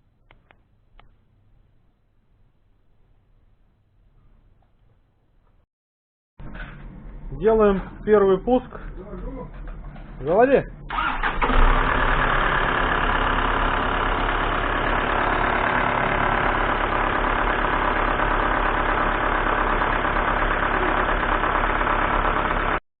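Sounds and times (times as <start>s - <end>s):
diesel engine idling: 10.4s - 22.8s.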